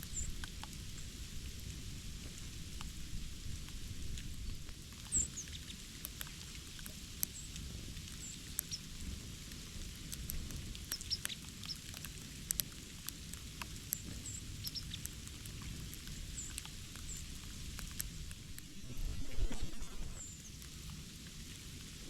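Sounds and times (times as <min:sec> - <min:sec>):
small birds chirping: 0:00.0 - 0:01.1, 0:05.1 - 0:05.8, 0:10.8 - 0:12.6, 0:13.8 - 0:18.6
sharp ticks and taps: 0:04.7 - 0:09.1, 0:10.0 - 0:18.4.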